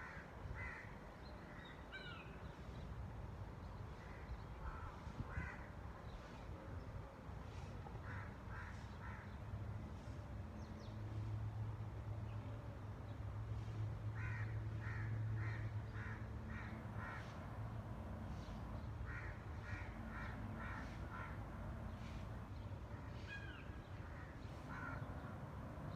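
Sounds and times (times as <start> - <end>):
crow cawing: 0.0 - 0.9, 4.6 - 5.7, 14.2 - 17.3, 19.0 - 21.4, 23.3 - 25.1.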